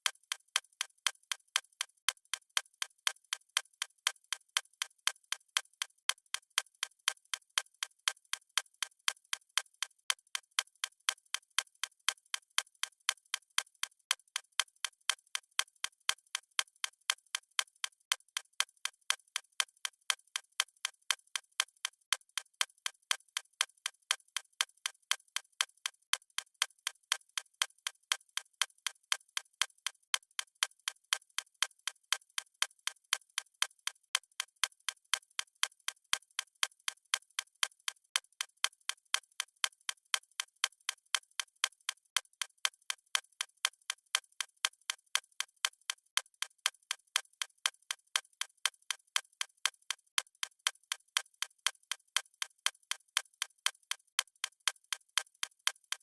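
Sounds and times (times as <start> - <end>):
watch ticking: 32.3 - 56.0.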